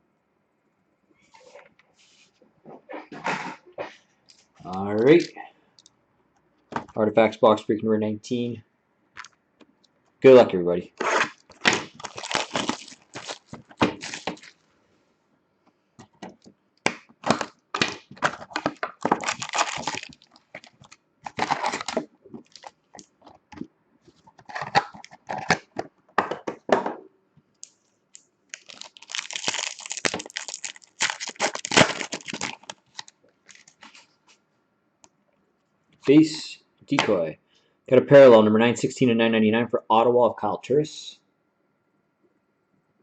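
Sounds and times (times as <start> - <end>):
cardboard and wrapper tearing: 11.0 - 14.6, 17.2 - 23.1, 28.5 - 34.0.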